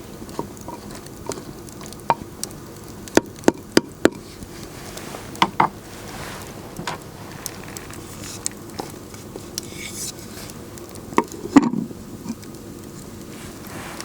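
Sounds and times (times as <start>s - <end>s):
fire crackling: 0.0s - 14.0s
sharp pops from fire: 0.0s - 14.0s.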